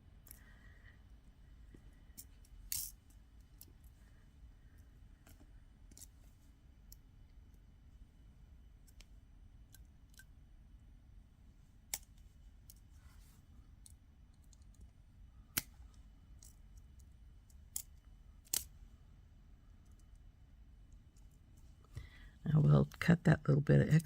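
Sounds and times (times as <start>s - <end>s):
pliers clicking on wire: 11.9s - 12.1s, 16.4s - 18.7s.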